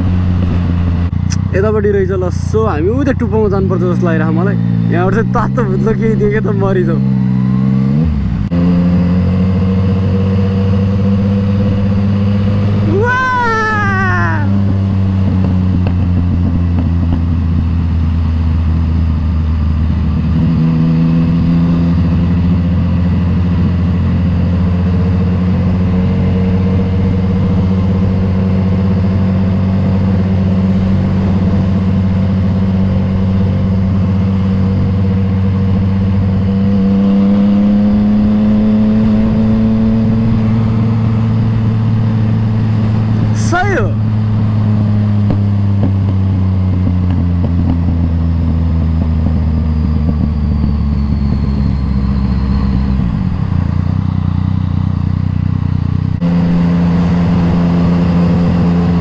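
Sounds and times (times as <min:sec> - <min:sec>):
motorcycle engine running: 0:00.0 - 0:59.0
short gliding squeal: 0:49.4 - 0:54.0.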